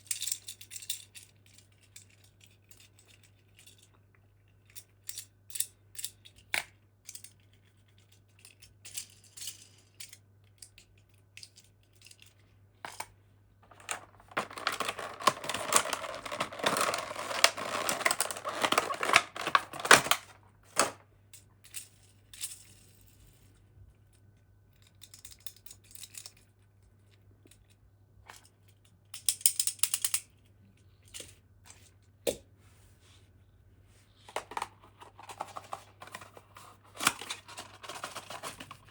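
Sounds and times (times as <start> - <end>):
toy packaging clicks and taps: 12.9 - 21.0
packaging crackling: 13.6 - 20.9.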